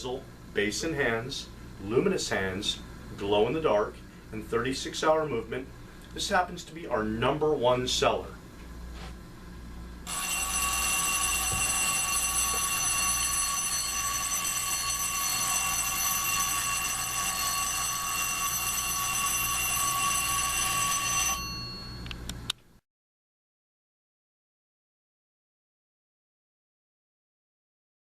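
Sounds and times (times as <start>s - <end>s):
alarm clock bell ringing: 10.1s - 22.1s.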